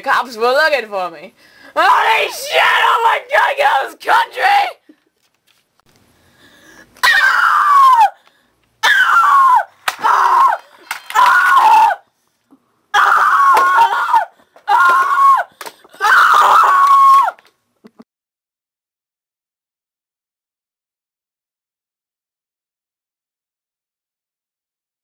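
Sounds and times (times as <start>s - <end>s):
high-pitched screams: 1.8s - 4.8s, 7.0s - 8.2s, 8.8s - 12.0s, 12.9s - 17.5s.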